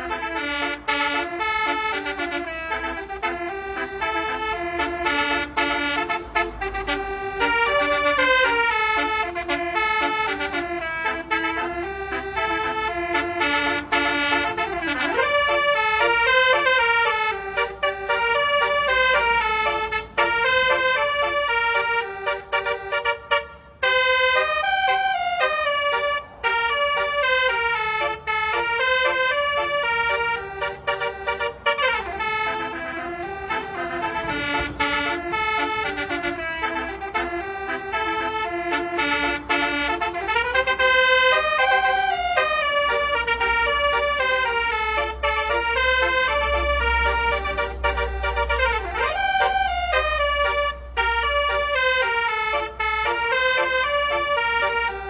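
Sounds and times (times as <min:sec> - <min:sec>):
musical horn playing a melody: 0:00.0 - 0:55.0.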